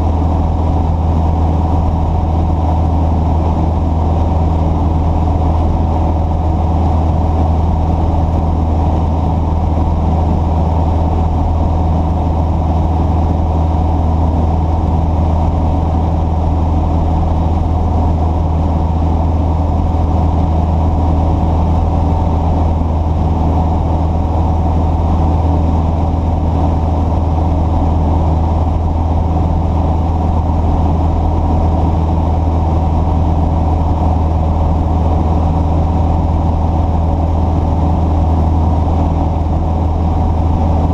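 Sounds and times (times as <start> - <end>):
engine idling: 0.0 - 40.9.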